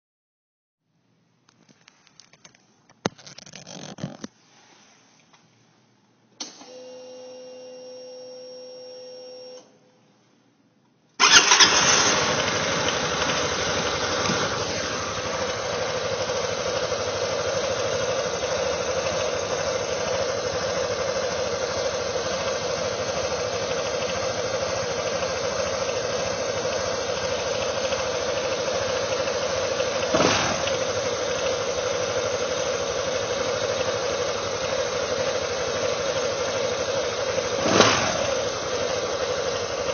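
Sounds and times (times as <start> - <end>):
engine knocking: 11.2 - 39.9
scooter engine starting and idling: 11.2 - 39.9.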